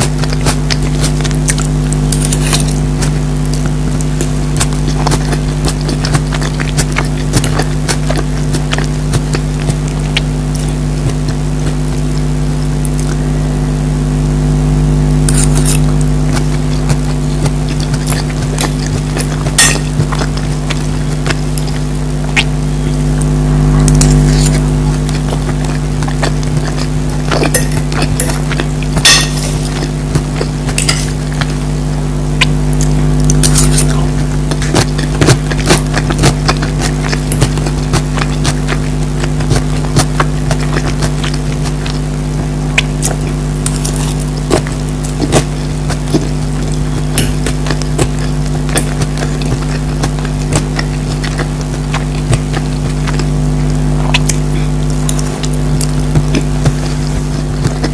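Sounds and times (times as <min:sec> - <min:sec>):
chewing: 0:00.0 - 0:13.3, 0:15.2 - 0:57.9
steady low hum: 0:00.0 - 0:57.9
utensil clinking on plate: 0:29.0 - 0:29.7.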